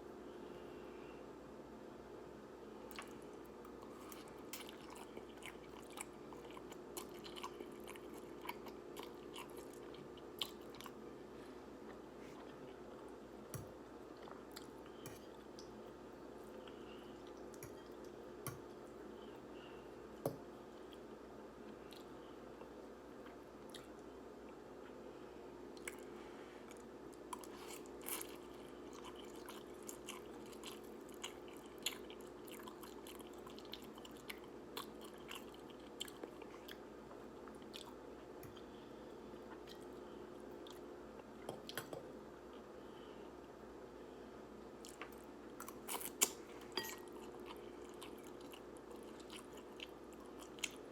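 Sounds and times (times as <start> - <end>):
faint steady hum: 0.0 - 50.9
person chewing noodles: 2.9 - 11.1, 11.7 - 19.1, 25.7 - 41.8, 44.8 - 50.9.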